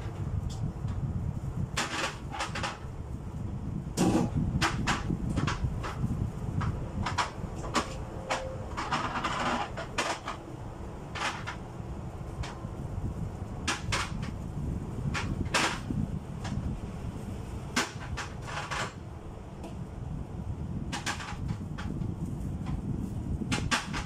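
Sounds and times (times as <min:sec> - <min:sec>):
knocks and clicks of handling: 0:06.6 - 0:10.4, 0:11.1 - 0:11.6, 0:12.4 - 0:12.6, 0:13.6 - 0:14.4, 0:20.9 - 0:22.0, 0:23.5 - 0:24.0.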